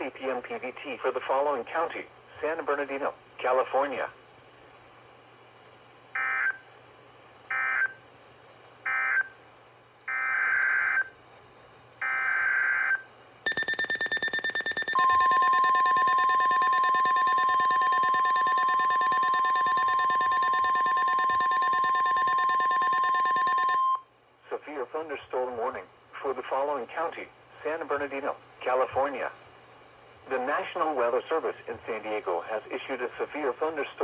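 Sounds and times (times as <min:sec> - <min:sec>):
raspy digital data bursts: 0:13.5 - 0:23.8
rapidly pulsing electronic alarm beep: 0:13.5 - 0:24.0
steady warning alarm tone: 0:13.5 - 0:24.0.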